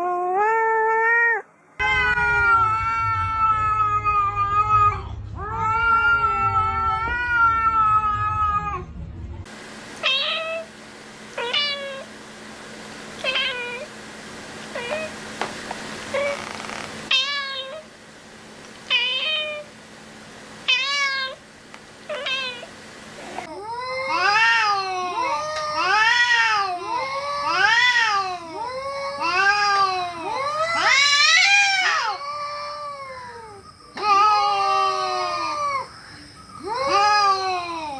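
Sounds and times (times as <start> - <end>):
cats meowing: 0.3 - 8.9, 16.2 - 17.8, 20.7 - 21.4, 22.1 - 22.7, 23.4 - 37.9.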